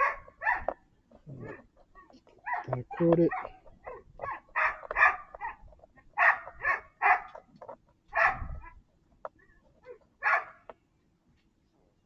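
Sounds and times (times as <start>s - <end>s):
dog barking: 0.0s - 0.8s, 2.4s - 7.4s, 8.1s - 8.8s, 9.8s - 10.7s.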